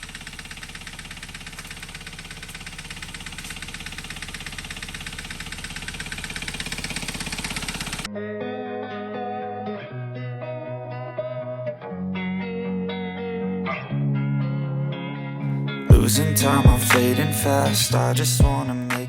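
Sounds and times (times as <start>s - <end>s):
car engine knocking: 0.0s - 8.1s
guitar music: 8.1s - 19.0s.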